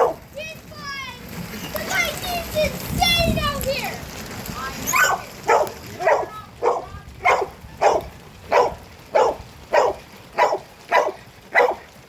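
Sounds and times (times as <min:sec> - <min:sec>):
dog barking: 0:00.0 - 0:00.2, 0:05.0 - 0:11.9
rain hiss: 0:00.0 - 0:12.0.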